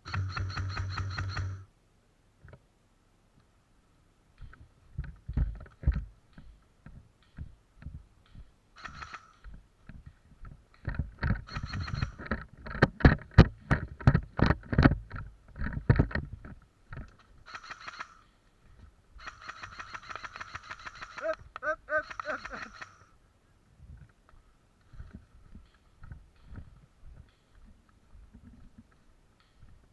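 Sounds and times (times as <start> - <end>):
thumps and rustling of gear: 9.4 - 17.3.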